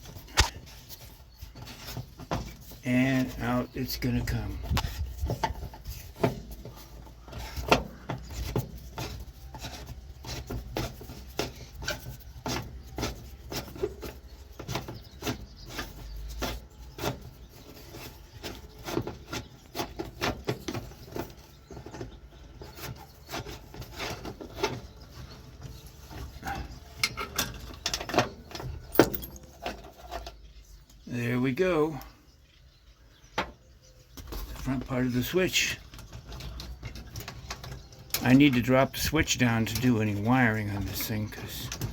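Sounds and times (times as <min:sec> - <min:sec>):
screwdriver scraping and clicking on metal: 0:22.6 - 0:30.4.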